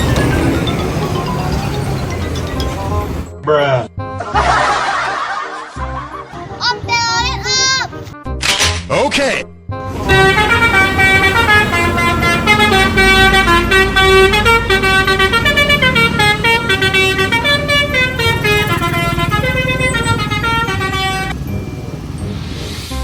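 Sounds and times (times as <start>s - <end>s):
musical air horn tune: 9.9s - 23.0s.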